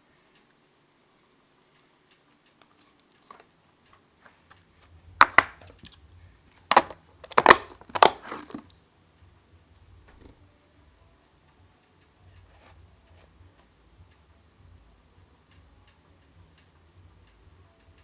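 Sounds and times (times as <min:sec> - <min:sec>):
faint ticks: 0:00.2 - 0:00.7, 0:11.4 - 0:18.0
sharp crackling pops: 0:01.4 - 0:09.4.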